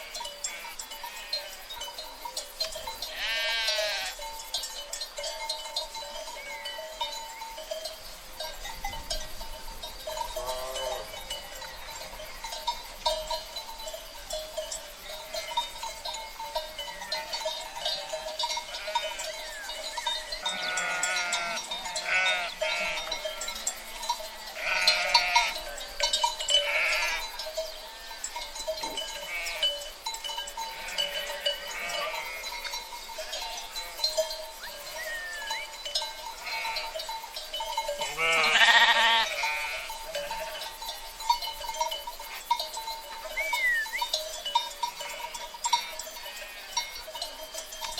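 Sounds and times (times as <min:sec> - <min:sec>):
sheep bleating: 0:00.0 - 0:01.6, 0:03.1 - 0:04.2, 0:20.4 - 0:23.9, 0:24.6 - 0:25.6, 0:26.6 - 0:27.2, 0:29.2 - 0:29.6, 0:30.7 - 0:32.4, 0:35.0 - 0:35.6, 0:36.4 - 0:37.0, 0:38.0 - 0:40.6, 0:44.9 - 0:46.8.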